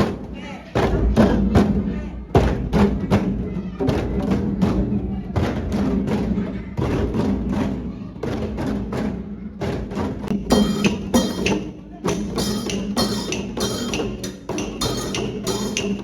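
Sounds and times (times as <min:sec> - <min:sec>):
percussive strikes: 0:02.4 - 0:16.0
sustained pitched instruments: 0:10.3 - 0:16.0
bright ringing strikes: 0:10.4 - 0:16.0.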